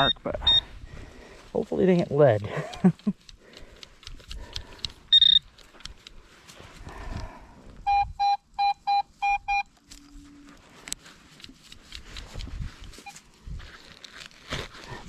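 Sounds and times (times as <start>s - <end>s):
metal detector beeps: 0.0s - 0.7s, 5.1s - 5.5s, 7.8s - 10.4s, 13.0s - 13.2s.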